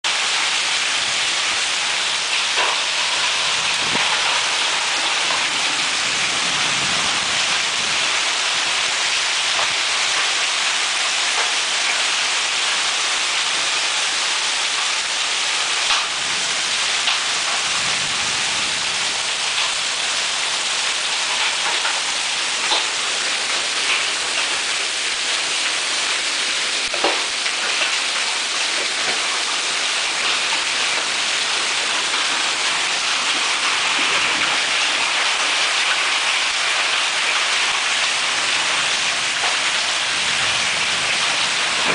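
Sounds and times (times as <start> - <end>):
heavy rain hiss: 0.1 - 41.9
hailstones striking hard surfaces: 40.4 - 41.9.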